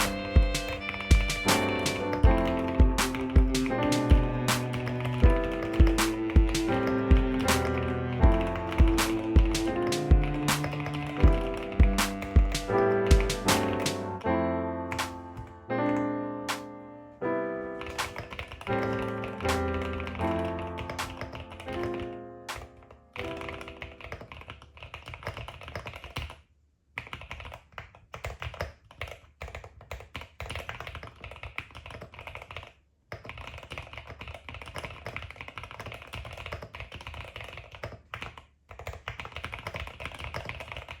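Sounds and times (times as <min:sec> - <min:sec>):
typing on computer keyboard: 0:00.0 - 0:14.3, 0:14.9 - 0:16.7, 0:17.8 - 0:26.4, 0:27.0 - 0:41.0.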